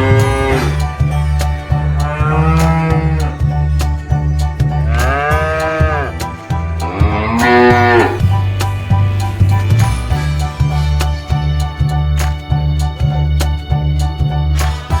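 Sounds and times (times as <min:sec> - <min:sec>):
cows mooing: 0:00.0 - 0:00.8, 0:01.6 - 0:03.7, 0:04.7 - 0:09.4
background music with low beat: 0:00.0 - 0:15.0.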